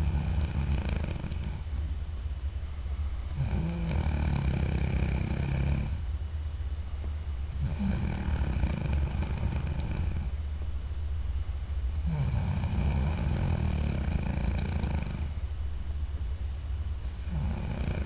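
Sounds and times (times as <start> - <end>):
man snoring: 0.0 - 1.7, 3.3 - 6.0, 7.5 - 10.4, 12.0 - 15.4, 17.1 - 18.0
steady low hum: 0.0 - 18.0.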